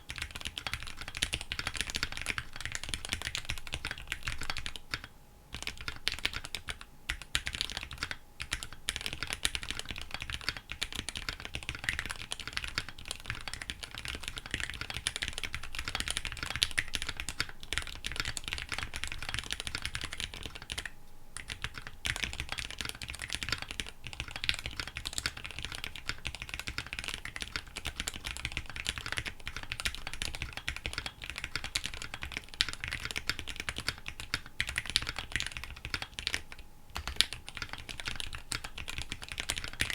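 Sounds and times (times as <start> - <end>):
mechanical keyboard typing: 0.1 - 39.9.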